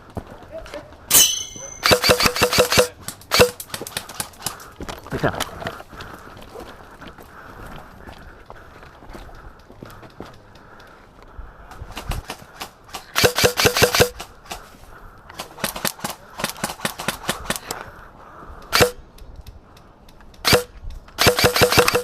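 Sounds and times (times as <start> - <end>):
airsoft rifles firing: 1.1 - 4.6, 11.9 - 14.7, 15.3 - 17.6, 20.4 - 22.0.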